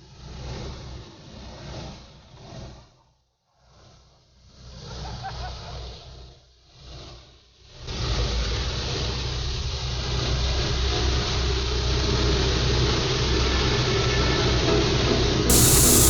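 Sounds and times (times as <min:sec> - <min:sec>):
heavy vehicle engine running: 0:15.5 - 0:16.0
rushing noise: 0:15.5 - 0:16.0.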